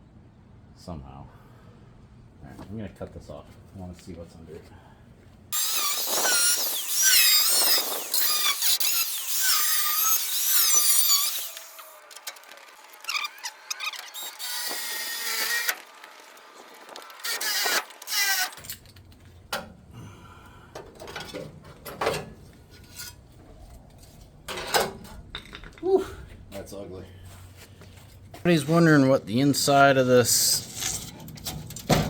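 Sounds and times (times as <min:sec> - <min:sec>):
power tool screeching on metal: 0:05.5 - 0:18.9.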